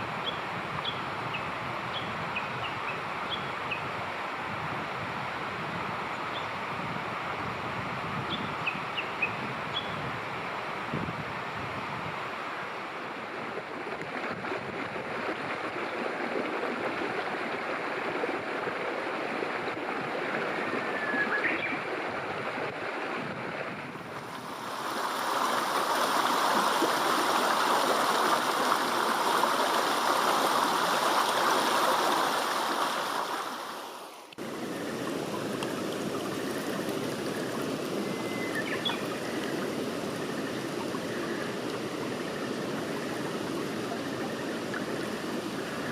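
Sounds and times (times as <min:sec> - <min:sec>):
flowing water rushing: 0:00.0 - 0:45.9
bird chirps: 0:38.1 - 0:39.5.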